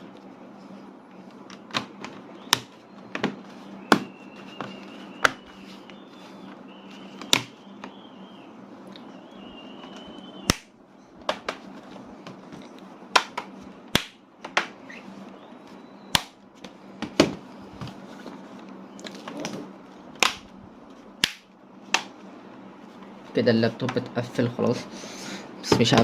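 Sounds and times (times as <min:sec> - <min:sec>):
plastic clips snapping: 0:13.2 - 0:14.7, 0:20.2 - 0:20.5, 0:21.2 - 0:22.1.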